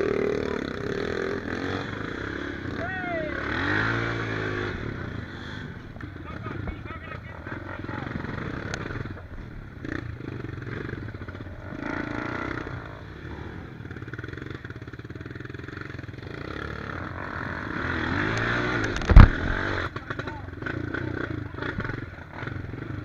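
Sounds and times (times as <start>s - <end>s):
dirt bike engine revving: 0.0s - 23.0s
loud thump: 19.0s - 19.7s.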